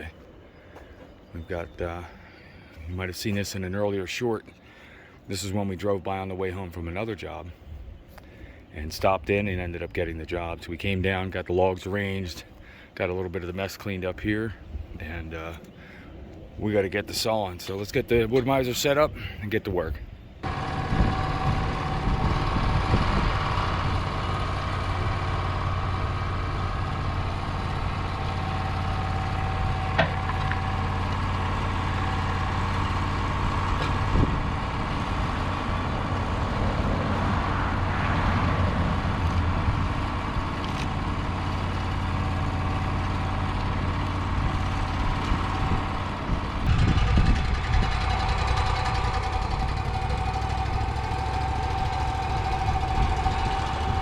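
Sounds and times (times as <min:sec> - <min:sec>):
engine running steadily: 0:17.7 - 0:54.0.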